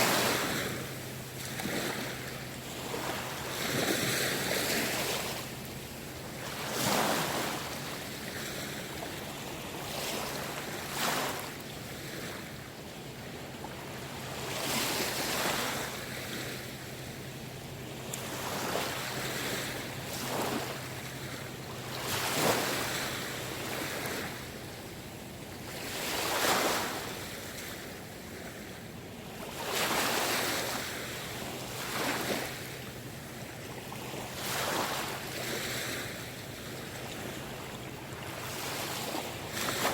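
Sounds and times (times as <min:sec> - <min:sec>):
sea waves washing onto shore: 0:00.0 - 0:28.6, 0:29.4 - 0:39.9.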